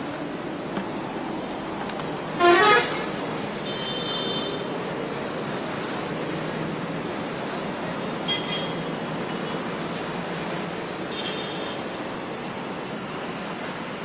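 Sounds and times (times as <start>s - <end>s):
street noise: 0.0s - 14.0s
vehicle horn toot: 2.4s - 4.6s, 8.3s - 8.8s.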